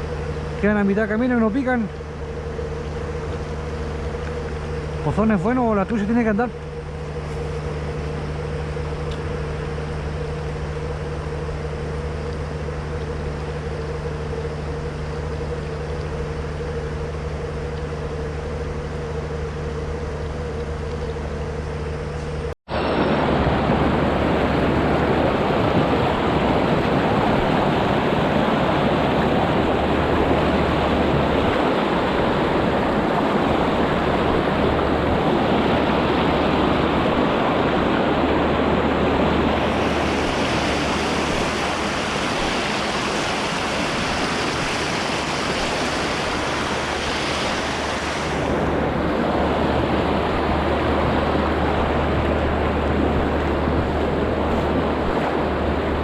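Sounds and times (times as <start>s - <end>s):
fast river rushing: 22.7s - 56.0s.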